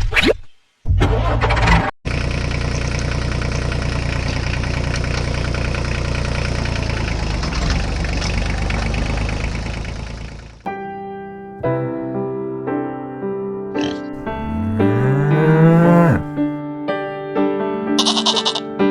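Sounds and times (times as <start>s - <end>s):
small tractor engine running: 2.1s - 10.4s.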